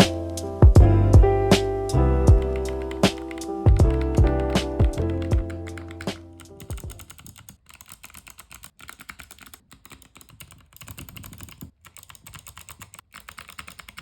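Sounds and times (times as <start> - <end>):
background music with beat: 0.0 - 7.0
mechanical keyboard typing: 2.3 - 14.0.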